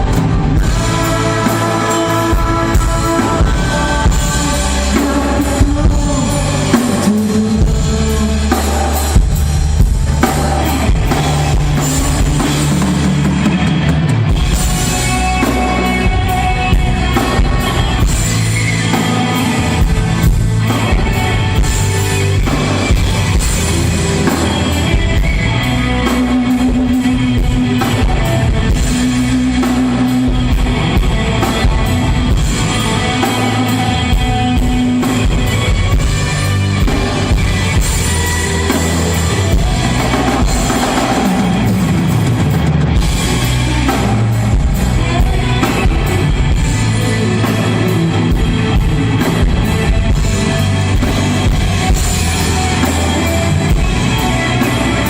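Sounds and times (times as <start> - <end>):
drum kit cymbal and snare: 0.0 - 55.0
electric guitars: 0.0 - 55.0.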